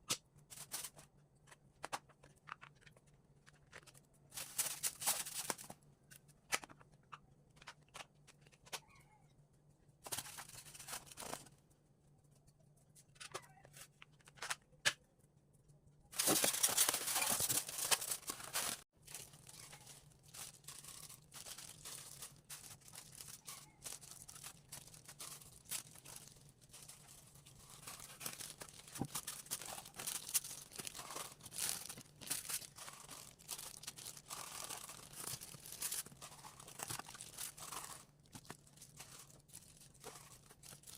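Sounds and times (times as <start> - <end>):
packaging crinkling and tearing: 2.5 - 5.8, 16.2 - 40.9.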